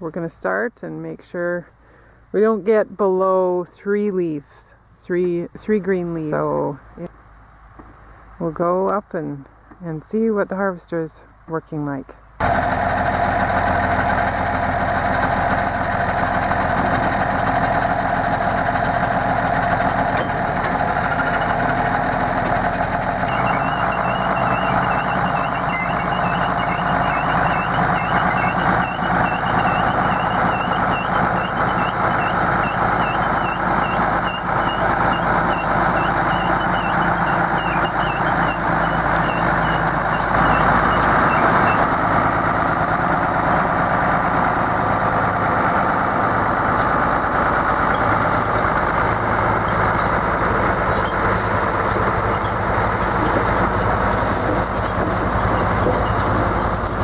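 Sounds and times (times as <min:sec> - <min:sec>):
tractor engine running: 0:12.2 - 0:57.0
fast high chirping: 0:23.2 - 0:41.9.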